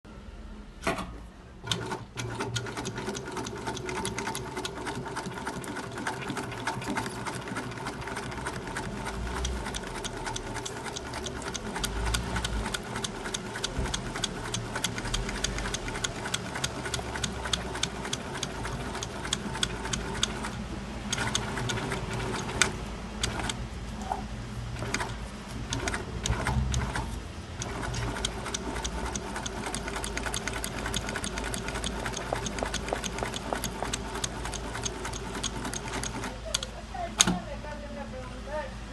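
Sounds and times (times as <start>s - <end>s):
sewing machine stitching: 1.6s - 23.6s, 24.8s - 36.6s
sewing machine knocks: 30.9s - 34.6s.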